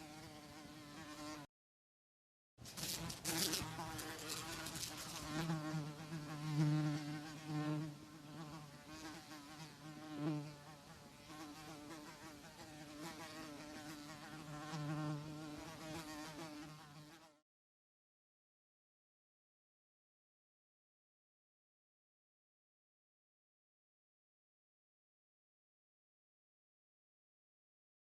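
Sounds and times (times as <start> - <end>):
flies buzzing: 0.0 - 1.5, 2.6 - 17.4.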